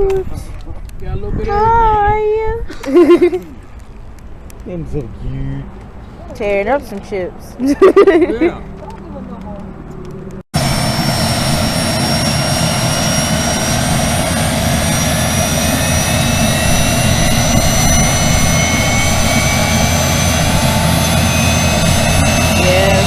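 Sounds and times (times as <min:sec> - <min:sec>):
helicopter engine and rotor: 0:10.6 - 0:23.0.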